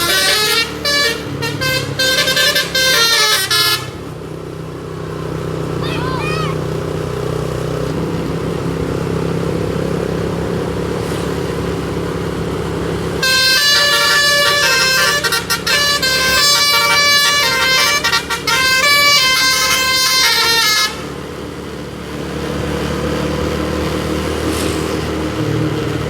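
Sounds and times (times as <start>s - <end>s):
musical air horn tune: 0.0s - 4.2s, 13.2s - 21.2s
low engine rumble: 0.0s - 26.0s.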